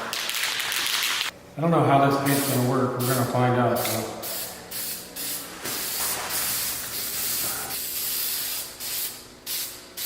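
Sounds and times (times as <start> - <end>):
spray paint can hissing: 2.3 - 10.0.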